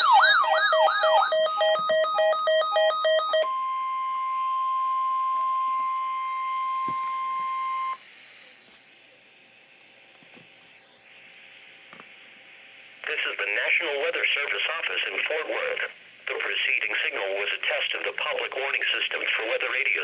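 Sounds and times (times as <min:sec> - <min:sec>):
rapid electronic beeping: 0:00.0 - 0:03.6
steady alarm tone: 0:00.0 - 0:08.0
wailing siren-like sweep: 0:00.0 - 0:08.0
faint radio hiss: 0:07.9 - 0:20.0.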